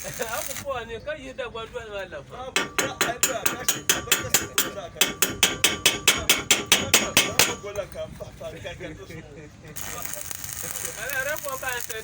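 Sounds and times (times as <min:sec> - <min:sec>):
hammer striking metal: 0:02.6 - 0:08.0.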